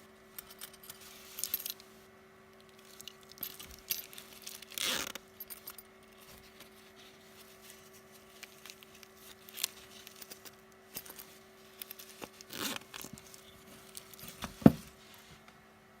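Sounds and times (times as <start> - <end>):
small clicks and scrapes: 2.6 - 15.2
zip being worked: 3.4 - 5.2, 11.8 - 14.5.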